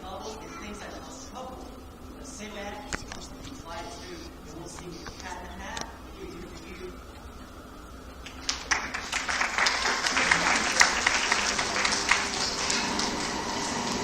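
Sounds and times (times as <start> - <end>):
audience applauding: 8.2 - 14.0.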